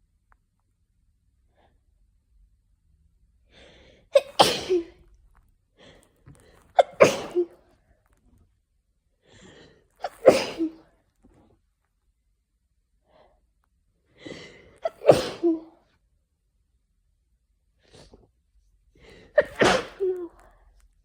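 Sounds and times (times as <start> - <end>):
person sneezing: 4.1 - 5.0, 6.7 - 7.6, 10.0 - 10.9, 14.8 - 15.8, 19.2 - 20.5.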